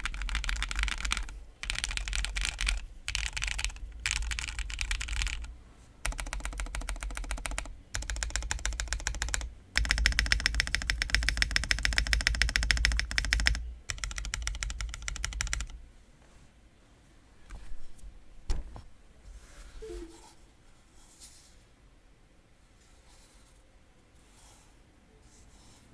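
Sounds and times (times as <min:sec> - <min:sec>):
mechanical keyboard keys clacking: 0:00.0 - 0:15.8.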